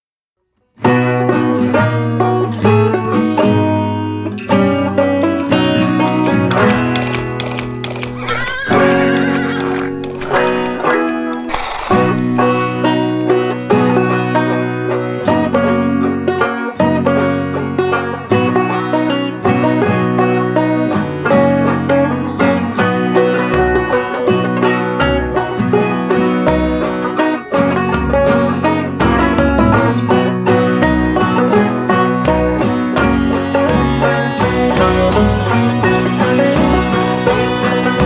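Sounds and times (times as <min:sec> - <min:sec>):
upbeat bluegrass banjo music: 0:00.8 - 0:38.0.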